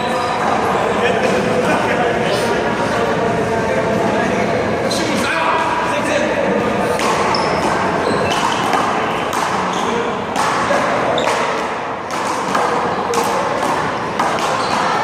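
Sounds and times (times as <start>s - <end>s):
steady background noise: 0.0s - 15.0s.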